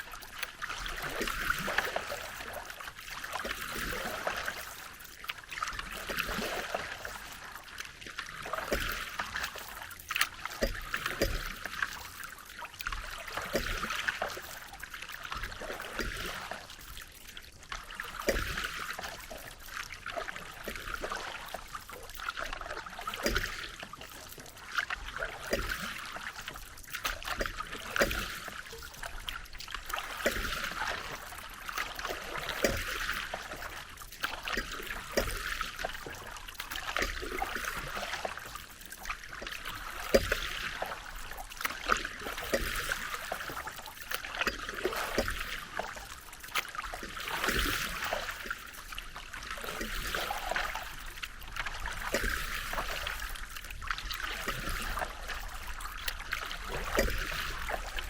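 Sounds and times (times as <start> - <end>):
paddle strokes in water: 0.0 - 58.0
water dripping off paddle: 0.0 - 58.0.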